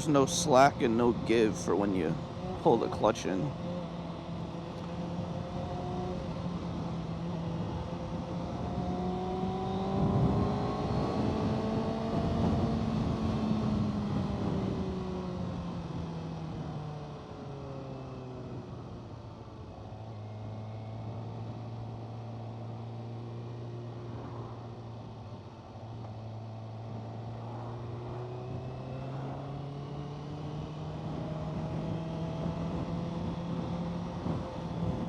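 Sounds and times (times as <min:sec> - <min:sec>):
wind rush on microphone: 0:05.2 - 0:17.0, 0:30.2 - 0:35.0.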